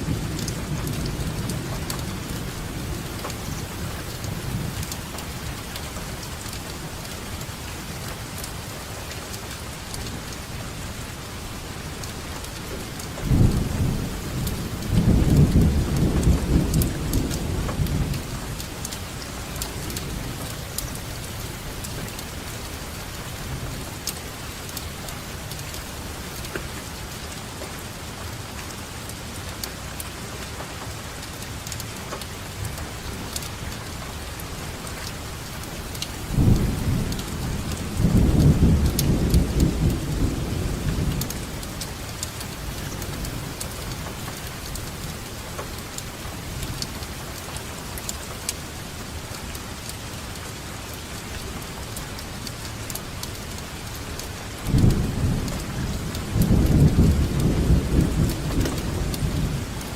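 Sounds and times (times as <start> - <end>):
rain pattering: 0.0 - 59.9
thunder rumble: 36.2 - 44.0, 54.6 - 59.9.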